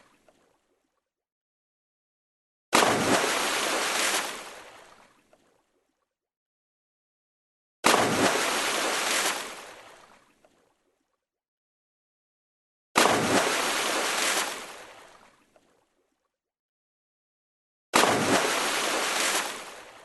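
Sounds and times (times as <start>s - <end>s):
water splash: 2.7s - 5.6s, 7.8s - 10.9s, 13.0s - 15.9s, 18.0s - 20.0s.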